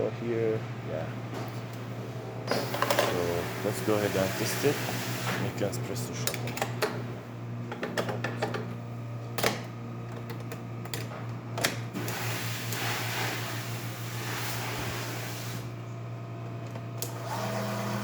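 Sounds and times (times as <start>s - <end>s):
espresso machine humming: 1.6s - 9.0s, 11.9s - 18.0s.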